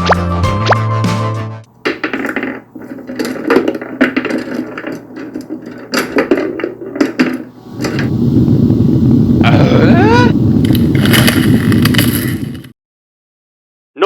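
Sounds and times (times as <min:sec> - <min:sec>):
plastic bricks clattering: 0:01.8 - 0:08.0
low rumble: 0:07.5 - 0:12.5.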